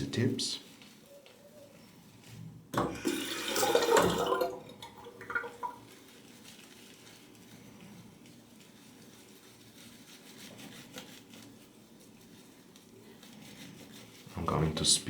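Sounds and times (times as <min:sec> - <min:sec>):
water running from a tap: 0:02.8 - 0:05.9
water splashing and dripping: 0:02.9 - 0:06.0.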